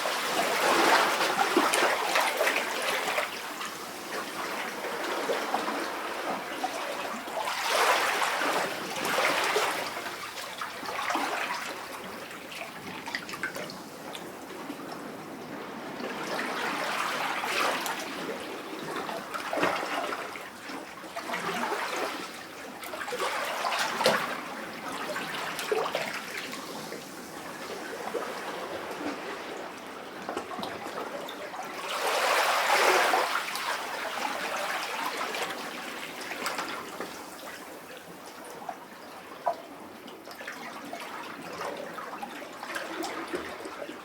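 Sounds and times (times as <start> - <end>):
sea waves sloshing in rocks: 23.1 - 37.8.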